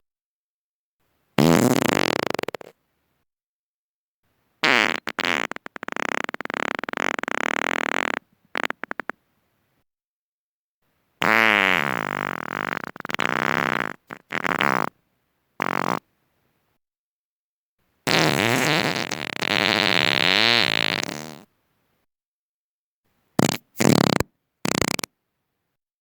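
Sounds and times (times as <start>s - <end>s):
sputtering farts: 1.4s - 2.8s, 4.6s - 9.2s, 11.2s - 14.9s, 15.6s - 16.0s, 18.1s - 21.5s, 23.4s - 25.1s.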